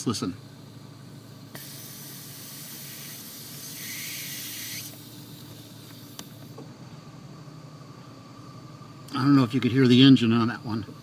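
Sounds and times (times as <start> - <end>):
car engine idling hum: 0.0 - 11.0
air hissing from vacuum leak: 1.2 - 6.6.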